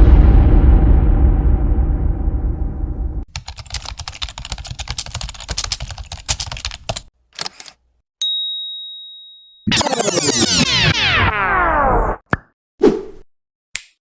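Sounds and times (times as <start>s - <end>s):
low boom rumble: 0.0s - 3.3s
computer keyboard typing: 3.3s - 7.7s
brief swish: 12.8s - 13.2s.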